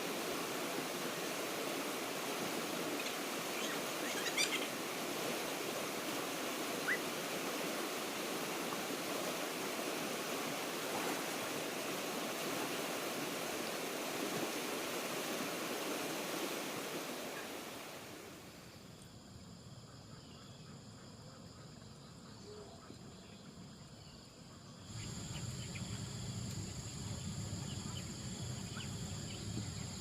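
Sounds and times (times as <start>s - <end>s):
stream water rushing: 0.0s - 18.6s.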